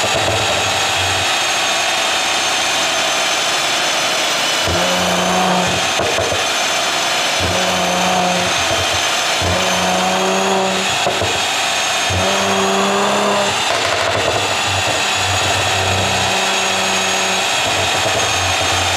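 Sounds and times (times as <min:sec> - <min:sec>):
engine exhaust revving: 0:04.6 - 0:06.6, 0:07.3 - 0:18.9.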